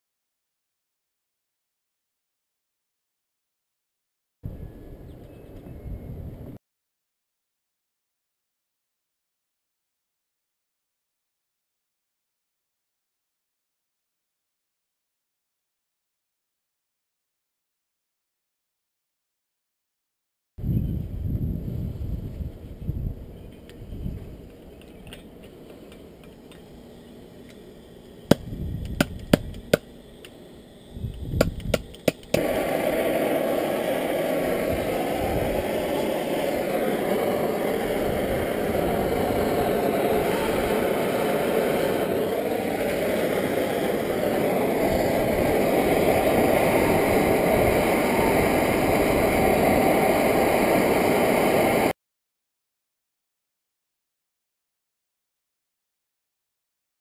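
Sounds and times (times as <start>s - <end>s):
torch flame hissing: 25.2s - 52.0s
sharp clicks: 31.1s - 32.4s.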